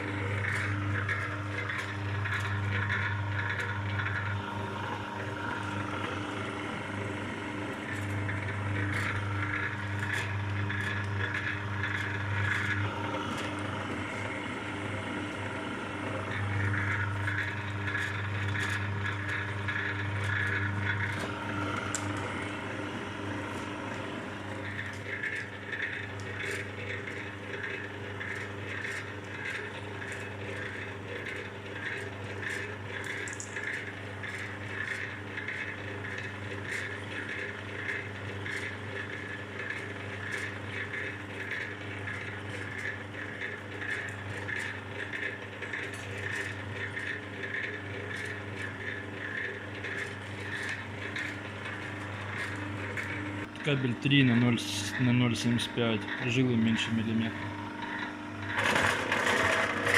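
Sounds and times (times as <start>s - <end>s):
machine motor and gearbox humming: 0.0s - 59.9s
rhythmic scraping of cable: 0.0s - 59.9s.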